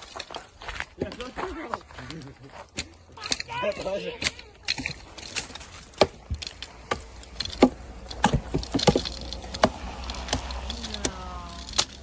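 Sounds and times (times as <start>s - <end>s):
timber knocking together: 2.7s - 11.1s.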